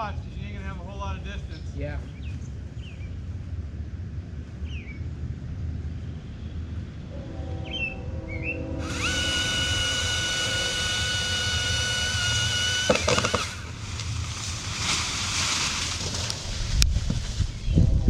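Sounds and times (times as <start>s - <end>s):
chainsaw cutting: 8.8s - 16.4s
rough rushing noise: 12.2s - 18.0s.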